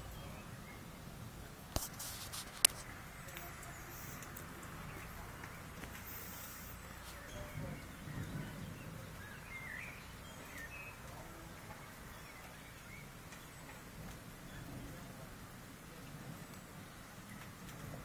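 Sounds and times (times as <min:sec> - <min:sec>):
faint outdoor background noise: 0:00.0 - 0:18.0
bird chirps: 0:03.2 - 0:14.7.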